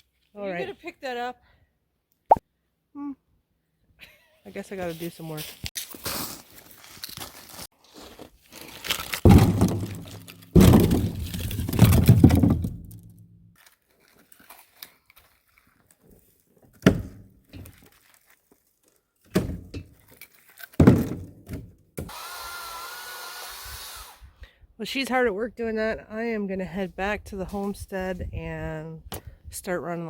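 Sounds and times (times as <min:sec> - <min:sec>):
firewood rounds thunking: 0:09.1 - 0:13.4, 0:16.8 - 0:17.7, 0:20.7 - 0:21.8.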